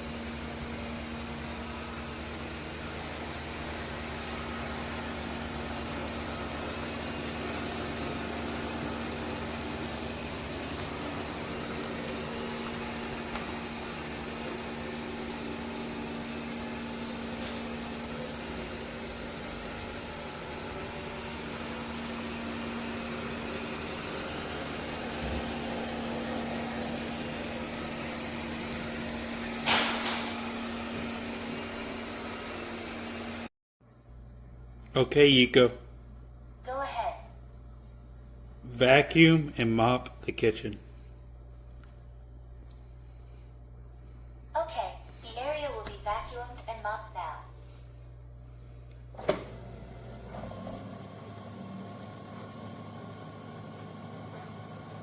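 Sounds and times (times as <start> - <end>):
robot vacuum motor hum: 0.1 - 29.8.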